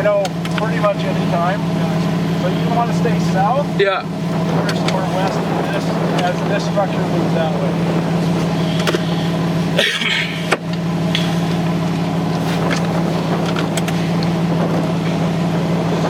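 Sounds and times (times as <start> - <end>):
vehicle engine idling: 0.0 - 16.0.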